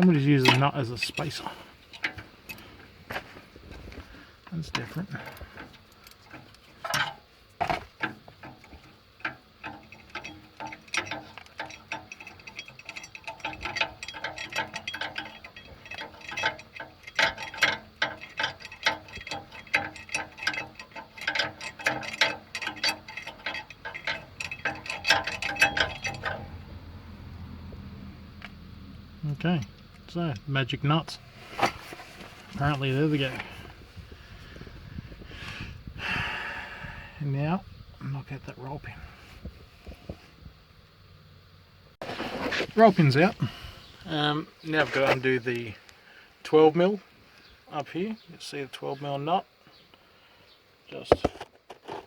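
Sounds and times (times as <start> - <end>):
sharp metal knocks: 6.8 - 26.6
ratchet spanner clicking: 8.5 - 26.6.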